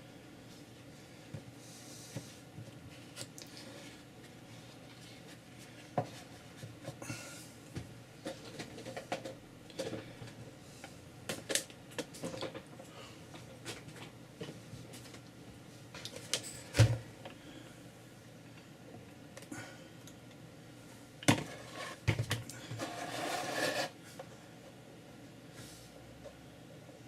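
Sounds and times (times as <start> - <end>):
boards and paper being handled: 21.3 - 24.0.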